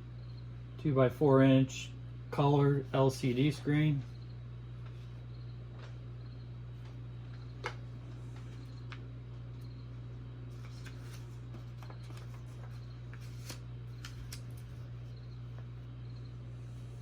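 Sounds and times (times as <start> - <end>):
parts and packaging rustling: 10.5 - 14.8.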